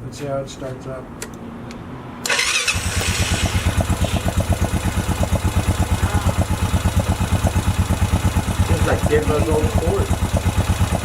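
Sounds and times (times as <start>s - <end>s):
engine cranking: 2.2s - 11.0s
engine idling: 2.3s - 11.0s.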